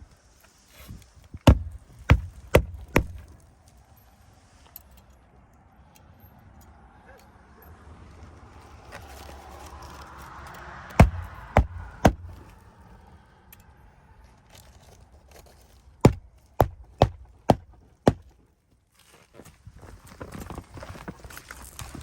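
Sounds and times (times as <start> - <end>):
hammer striking shingle roof: 1.4 - 3.3, 11.0 - 12.5, 16.0 - 18.4.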